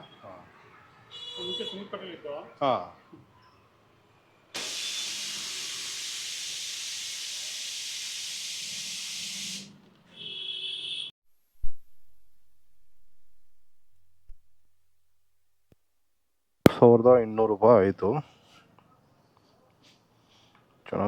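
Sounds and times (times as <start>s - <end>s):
compressed air hissing: 4.6s - 9.8s
sharp thump: 11.6s - 12.1s.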